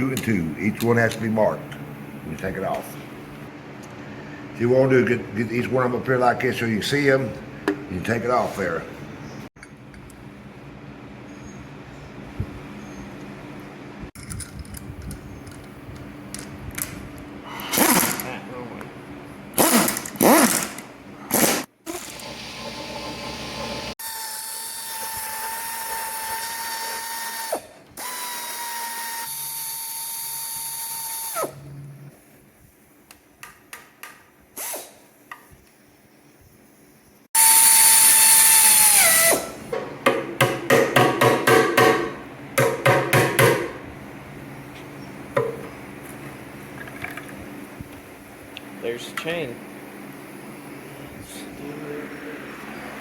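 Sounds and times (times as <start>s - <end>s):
power drill whining: 21.9s - 31.5s
drill trigger bursts: 24.0s - 31.5s, 37.4s - 39.5s.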